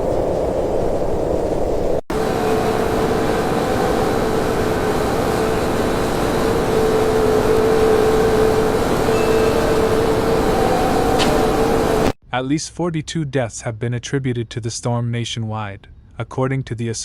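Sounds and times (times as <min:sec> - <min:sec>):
steady hum with held tone: 0:00.2 - 0:12.2
vehicle rumble: 0:02.1 - 0:12.2.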